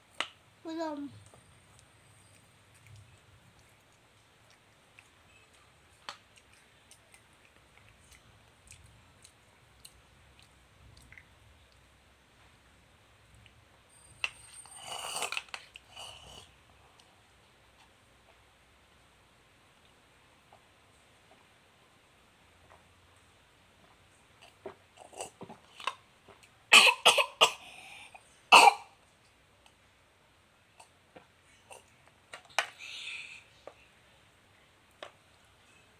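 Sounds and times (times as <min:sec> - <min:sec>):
faint chewing with mouth clicks: 0:01.1 - 0:26.7, 0:30.7 - 0:35.9
person coughing: 0:26.8 - 0:27.8.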